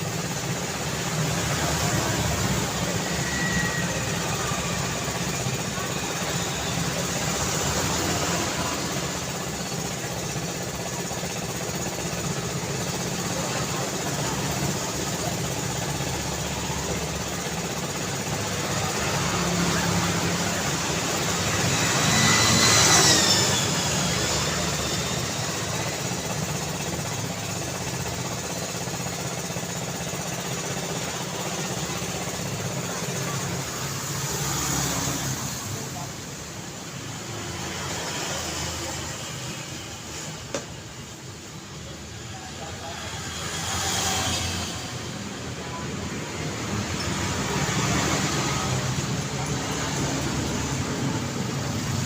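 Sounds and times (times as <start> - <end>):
city street traffic: 0.0 - 52.0
vehicle passing with high whine: 18.8 - 25.6, 42.5 - 52.0.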